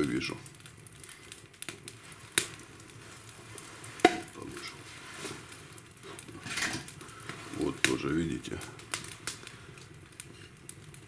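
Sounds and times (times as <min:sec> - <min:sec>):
wood fire crackling: 0:00.0 - 0:11.0
sharp wood cracks: 0:08.6 - 0:11.0.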